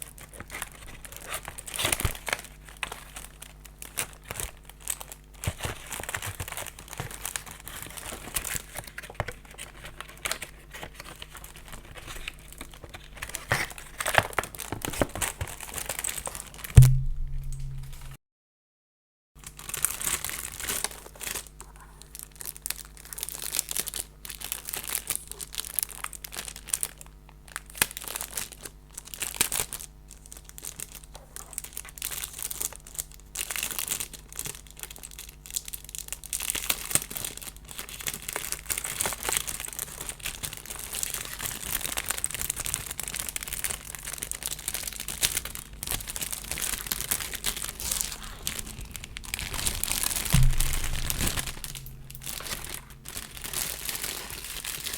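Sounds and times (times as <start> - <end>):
packaging crinkling: 0.0 - 18.1, 19.5 - 26.9, 27.8 - 54.9
low steady hum: 16.8 - 18.2, 45.5 - 54.9.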